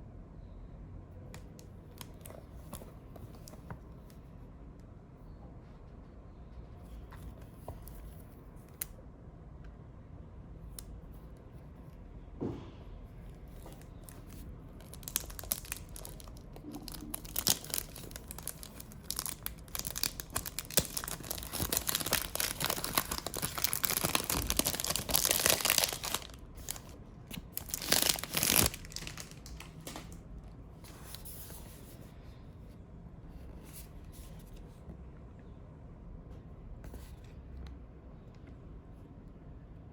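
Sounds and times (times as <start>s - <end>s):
packaging tearing and crinkling: 13.7s - 30.2s.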